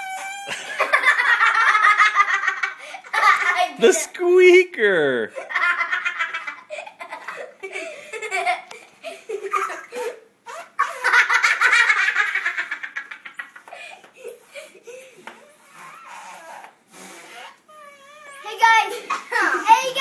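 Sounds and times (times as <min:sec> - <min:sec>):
boys laughing: 0:00.3 - 0:15.4, 0:18.8 - 0:20.0.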